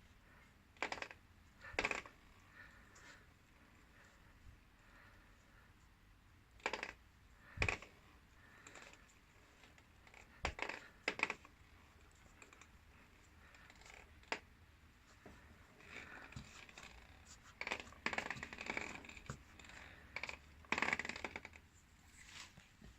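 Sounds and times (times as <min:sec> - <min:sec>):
scraping creaks: 0:15.2 - 0:22.6.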